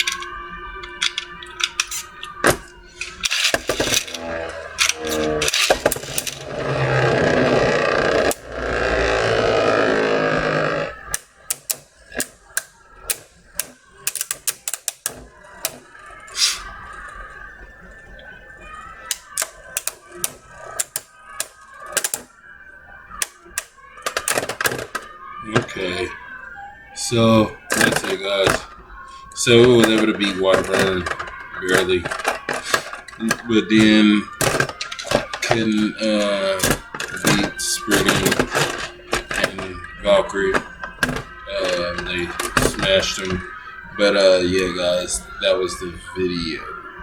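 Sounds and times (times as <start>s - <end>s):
spinning tops clicking into launchers: 0.0s - 6.8s, 10.7s - 16.9s
spinning tops clacking in plastic stadium: 0.0s - 8.5s, 10.8s - 16.9s, 18.7s - 22.3s, 23.2s - 25.8s, 27.6s - 43.5s
tops scraping plastic stadium: 15.2s - 16.9s.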